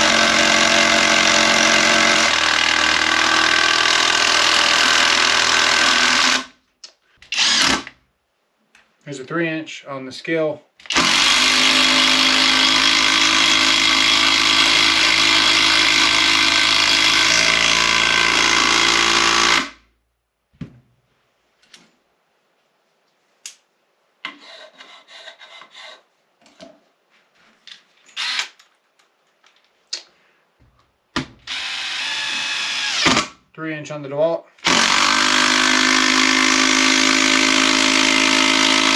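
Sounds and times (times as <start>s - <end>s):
cordless driver running: 10.9s - 19.8s
faint clicks and handling noises: 27.5s - 30.9s.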